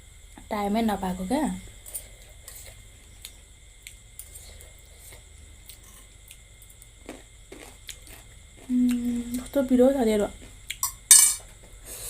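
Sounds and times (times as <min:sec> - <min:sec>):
chewing and wet mouth clicks: 0:02.6 - 0:04.3.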